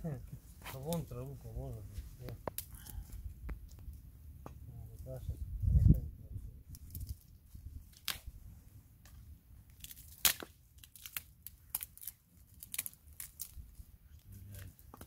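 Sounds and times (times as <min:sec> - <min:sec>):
dry grass crackling: 0:00.2 - 0:04.1, 0:06.6 - 0:15.0
dry twigs snapping: 0:02.2 - 0:04.0, 0:06.7 - 0:08.3, 0:09.0 - 0:15.0.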